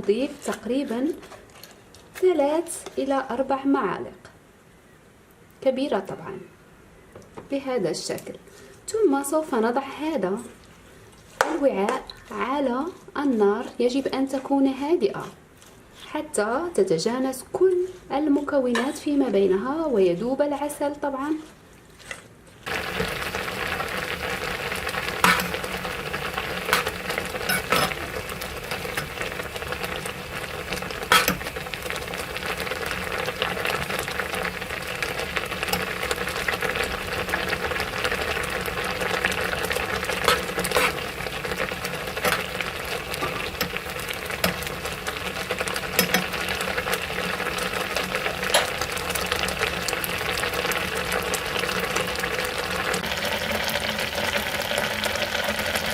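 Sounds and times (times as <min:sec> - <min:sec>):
pot sizzling: 0:16.3 - 0:55.9.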